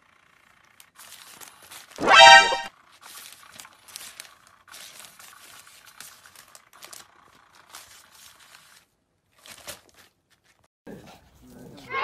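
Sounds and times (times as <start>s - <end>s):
rustling and crinkling: 1.0s - 2.0s, 2.9s - 10.7s.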